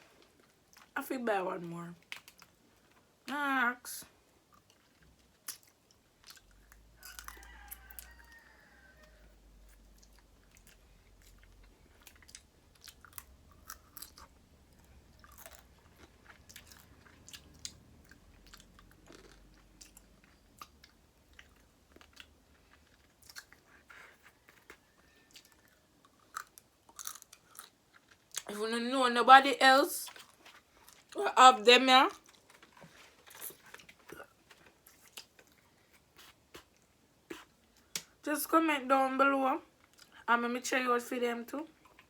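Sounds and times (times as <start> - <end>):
close chewing of food: 0.0 - 1.0, 2.0 - 3.2, 4.2 - 28.6, 30.0 - 31.2, 32.1 - 38.2, 39.7 - 40.3, 41.7 - 42.0
faint low hum: 0.0 - 42.0
mouth clicks and crunches: 2.0 - 2.6, 4.5 - 8.1, 9.7 - 28.5, 32.2 - 38.2.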